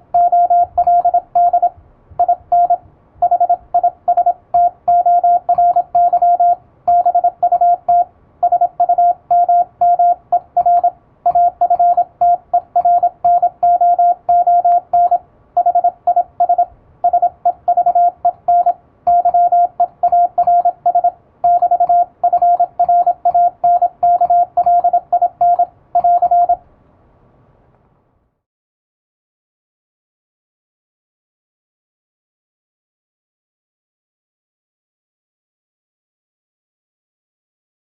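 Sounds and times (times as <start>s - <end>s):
morse code beeps: 0.1s - 26.6s.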